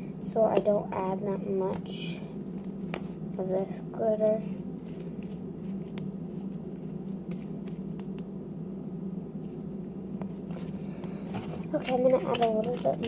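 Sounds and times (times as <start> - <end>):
low background hum: 0.0 - 13.0.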